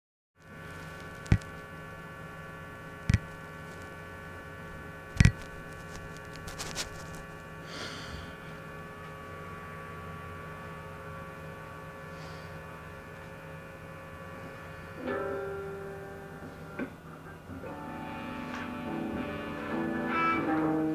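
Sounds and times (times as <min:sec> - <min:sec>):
steady electrical hum: 0:00.4 - 0:20.9
sharp clicks: 0:03.1 - 0:03.4, 0:05.2 - 0:06.5.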